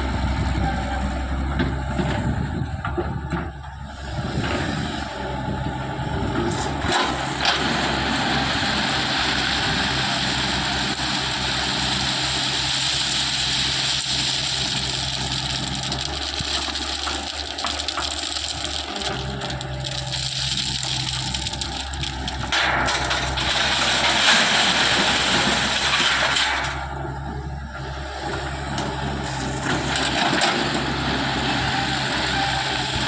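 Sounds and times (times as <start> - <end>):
diesel engine running: 0.0 - 33.0.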